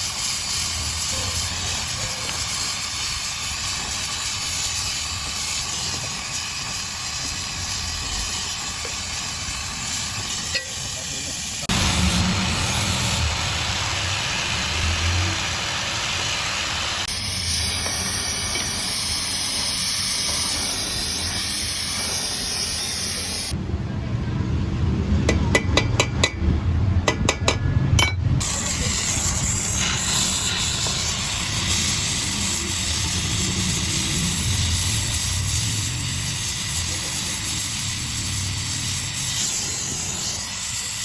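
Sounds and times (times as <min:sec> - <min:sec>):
steady hissing: 0:00.0 - 0:23.6, 0:28.4 - 0:41.0.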